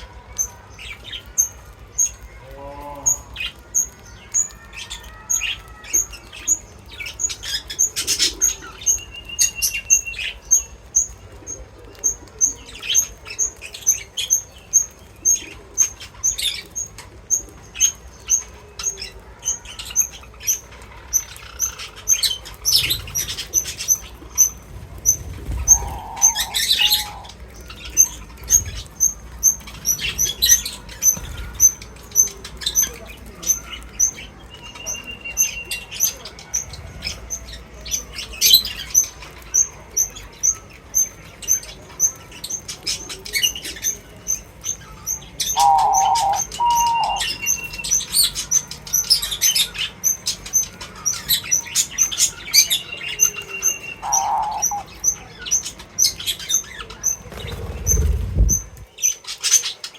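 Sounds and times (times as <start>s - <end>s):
rustles and flutters: 0.0s - 47.4s, 55.6s - 59.9s
small birds chirping: 0.0s - 59.9s
lower bird calls: 22.0s - 32.4s, 45.4s - 48.4s, 52.4s - 55.2s.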